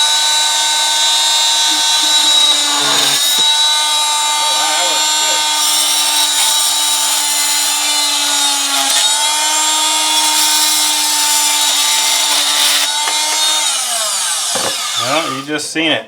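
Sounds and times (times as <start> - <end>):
multi-tool cutting plastic pipe: 0.0 - 15.6.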